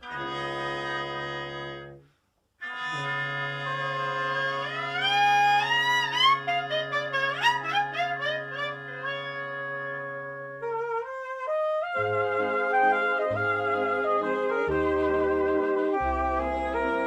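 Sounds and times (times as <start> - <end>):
wind instruments playing: 0.0 - 2.0, 2.6 - 17.0.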